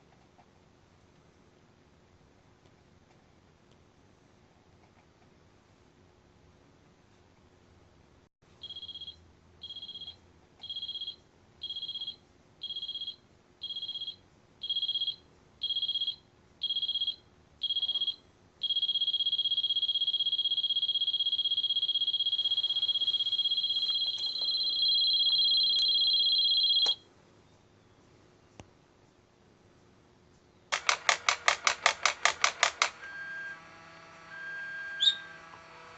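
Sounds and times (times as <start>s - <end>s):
alarm clock beeping: 8.6s - 27.0s, 32.0s - 35.6s.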